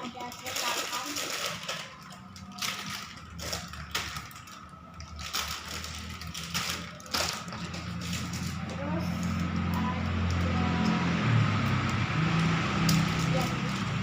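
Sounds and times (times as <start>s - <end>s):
plastic toy pieces clicking and rustling: 0.0s - 10.7s.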